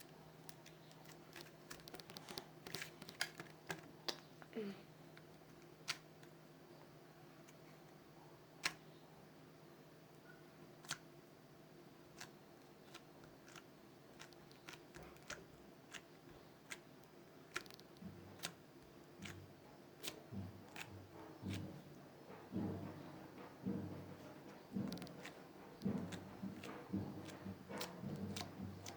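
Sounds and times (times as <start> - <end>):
low dull thumps: 20.3 - 28.9.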